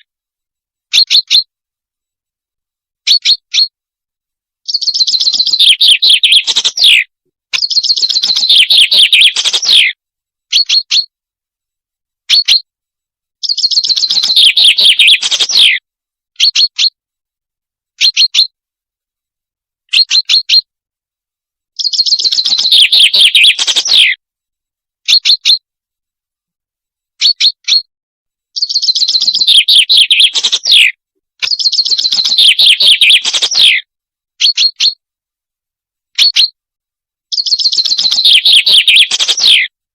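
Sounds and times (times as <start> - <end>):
high bird calls: 0.9 - 1.5, 3.1 - 3.7, 4.6 - 11.1, 12.3 - 12.6, 13.4 - 15.8, 16.4 - 17.0, 18.0 - 18.5, 19.9 - 20.7, 21.8 - 24.2, 25.1 - 25.6, 27.2 - 27.9, 28.6 - 35.0, 37.3 - 39.7
recorded birdsong: 0.9 - 1.5, 3.0 - 3.8, 4.6 - 11.2, 12.2 - 12.7, 13.4 - 15.8, 16.4 - 17.0, 18.0 - 18.6, 19.9 - 20.7, 21.7 - 24.2, 25.0 - 25.6, 27.2 - 27.9, 28.5 - 35.0, 36.1 - 36.6, 37.3 - 39.8.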